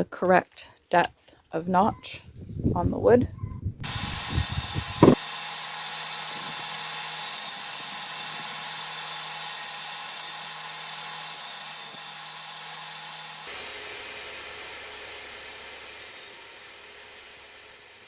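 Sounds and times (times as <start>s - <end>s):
circular saw running: 3.8s - 18.0s.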